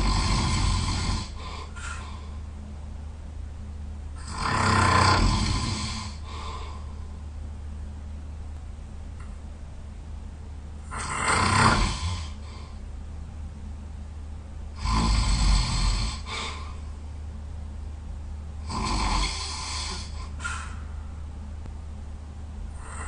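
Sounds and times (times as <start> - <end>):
person snoring loudly: 0.0 - 2.0, 4.2 - 6.4, 10.9 - 12.4, 14.8 - 16.6, 18.6 - 20.7, 22.8 - 23.0
quiet breathing: 0.0 - 2.6, 4.2 - 7.4, 10.8 - 12.9, 15.0 - 17.1, 18.9 - 21.3, 22.7 - 23.0.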